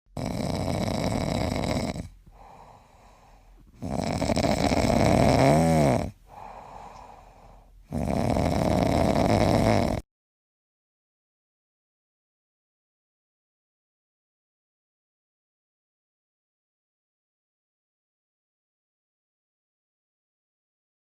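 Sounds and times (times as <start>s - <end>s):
dog snoring: 0.1s - 10.0s
quiet breaths: 0.2s - 10.0s.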